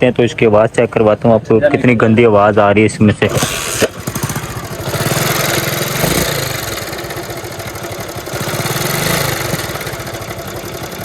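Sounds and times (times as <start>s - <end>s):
motorcycle engine revving: 3.2s - 11.0s.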